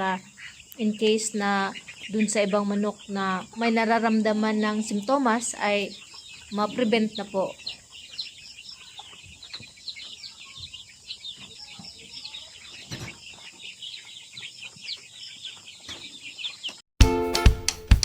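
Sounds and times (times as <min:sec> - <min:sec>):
chickens clucking and chirping: 0:00.0 - 0:16.8
music: 0:17.0 - 0:18.0.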